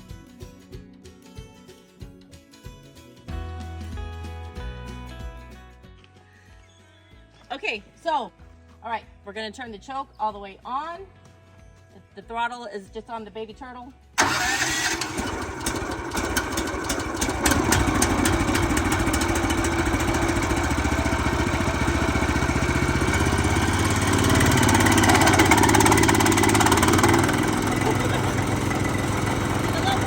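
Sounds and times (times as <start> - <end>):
gasoline engine running: 14.2 - 30.0.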